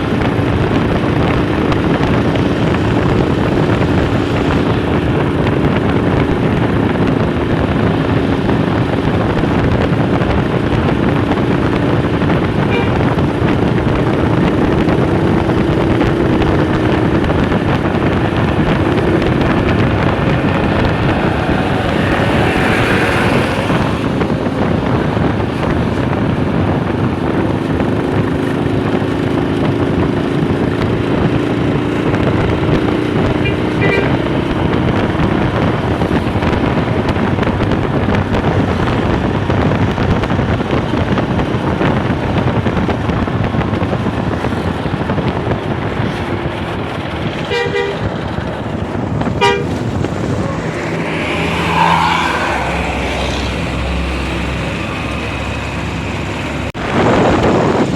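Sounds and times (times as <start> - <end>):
road and wind noise: 0.0 - 57.9
rapid bus horn toots: 12.6 - 13.3, 33.4 - 34.4, 47.4 - 48.4, 49.3 - 50.9
faint held horn tone: 47.5 - 48.1, 49.4 - 52.5.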